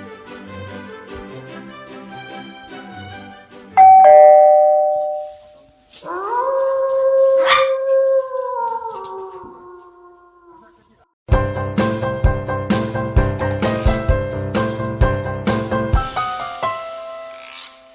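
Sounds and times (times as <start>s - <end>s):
background music: 0.0s - 4.5s, 11.3s - 17.9s
ding-dong doorbell chime: 3.8s - 5.4s
puppy howling: 6.0s - 10.8s.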